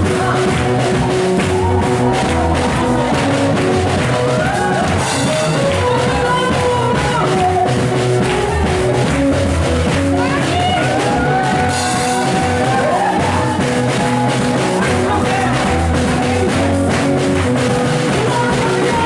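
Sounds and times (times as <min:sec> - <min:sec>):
drum kit: 0:00.0 - 0:19.0
live band music: 0:00.0 - 0:19.0
person singing: 0:02.8 - 0:09.0.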